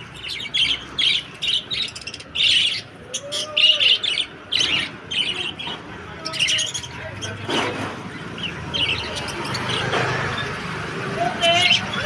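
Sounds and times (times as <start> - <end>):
parrots chirping and squawking: 0.0 - 12.0.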